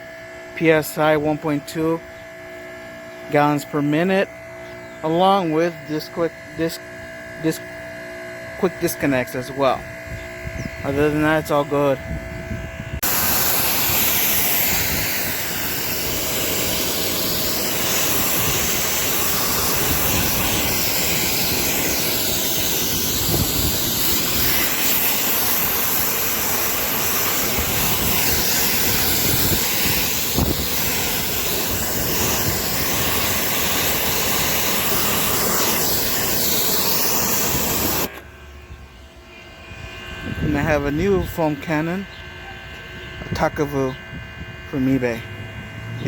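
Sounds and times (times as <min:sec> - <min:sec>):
pump running: 0:00.1 - 0:42.0
pressure washer water jet hissing: 0:13.0 - 0:38.4.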